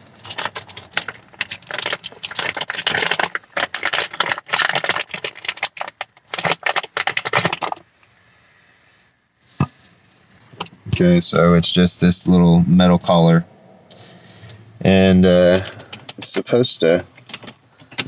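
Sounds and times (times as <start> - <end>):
packaging crinkling and rattling: 0.1 - 7.9.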